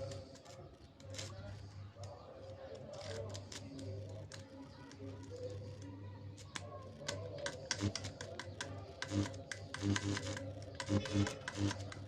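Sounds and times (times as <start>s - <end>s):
arc welder crackling: 0.0s - 12.0s.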